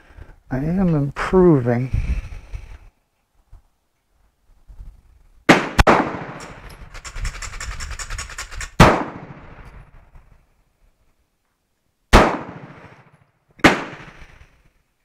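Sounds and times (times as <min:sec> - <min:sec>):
pistol shots echoing: 0:05.5 - 0:06.7, 0:08.8 - 0:09.7, 0:12.1 - 0:14.3.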